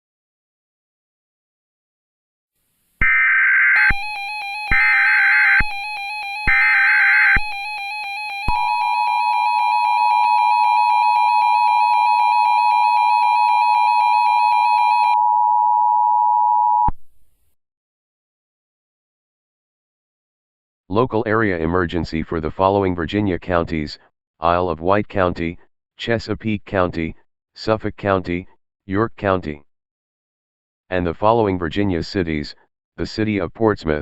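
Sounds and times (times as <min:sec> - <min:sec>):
screeching data bursts: 0:03.0 - 0:08.4
steady attention signal tone: 0:03.0 - 0:16.9
wavering electronic tone: 0:03.0 - 0:16.9.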